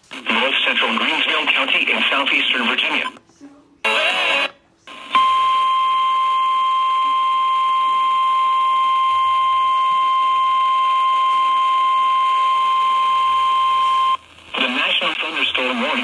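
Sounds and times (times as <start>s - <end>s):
steady high alarm beep: 5.2s - 14.2s.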